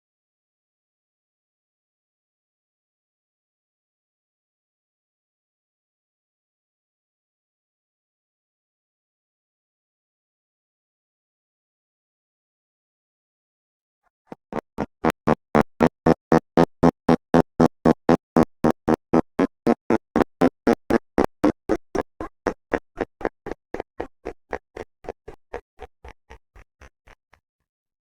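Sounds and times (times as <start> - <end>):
slowed fart rattle: 14.3 - 27.4.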